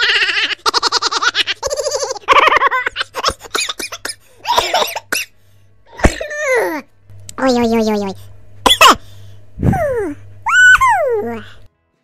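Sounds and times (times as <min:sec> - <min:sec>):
baby laughing: 0:00.0 - 0:05.0.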